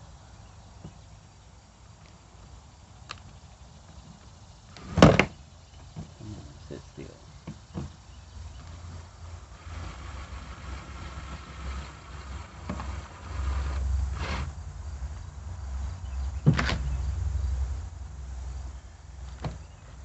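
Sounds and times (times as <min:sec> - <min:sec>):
steady low rumble: 0:08.1 - 0:20.0.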